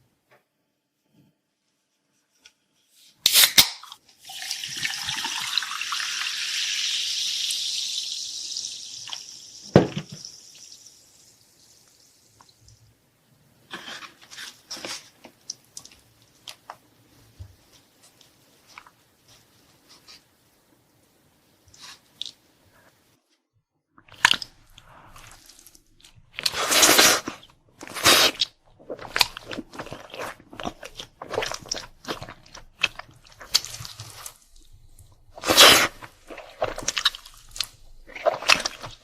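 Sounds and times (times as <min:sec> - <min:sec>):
drink pouring into cup: 0:04.2 - 0:07.0.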